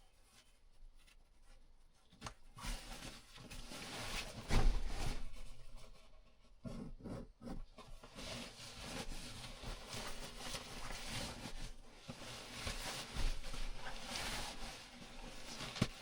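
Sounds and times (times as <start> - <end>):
rustling of handled objects: 0.0 - 16.0.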